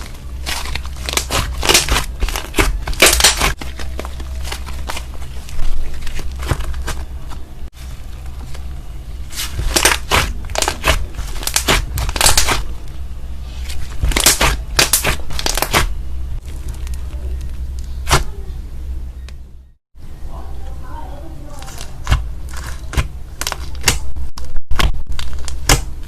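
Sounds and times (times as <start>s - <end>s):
slime crackling and popping: 0.0s - 7.4s, 9.3s - 13.0s, 13.6s - 18.3s, 21.6s - 26.0s
low steady hum: 0.0s - 26.0s.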